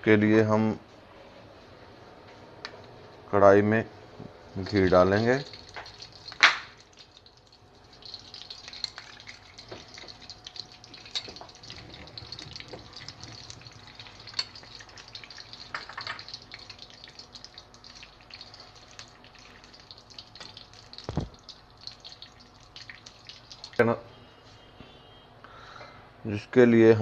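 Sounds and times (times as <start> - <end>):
hot ghee crackling: 4.5 - 23.8.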